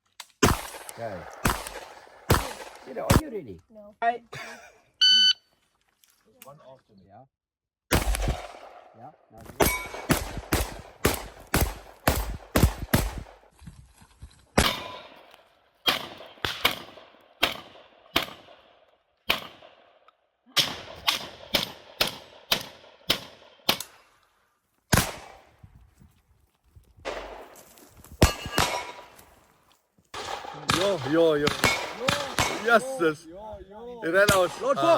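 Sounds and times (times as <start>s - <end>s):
shotgun shots: 0.4s - 3.2s, 7.9s - 8.9s, 9.6s - 13.4s, 15.9s - 18.6s, 24.9s - 25.5s, 27.1s - 27.6s, 28.2s - 29.2s, 30.2s - 33.1s, 34.1s - 34.9s.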